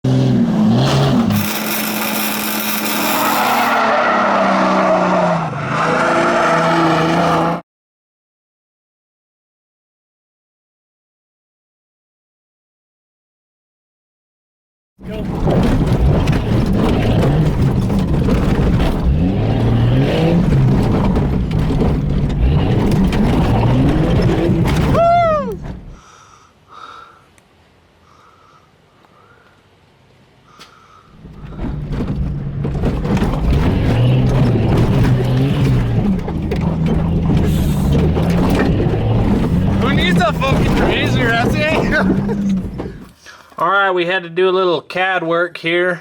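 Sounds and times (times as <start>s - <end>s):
engine revving: 0.0s - 7.6s, 15.1s - 25.0s, 31.2s - 43.0s
tyres spinning: 1.0s - 3.8s, 15.1s - 26.0s, 31.2s - 43.2s.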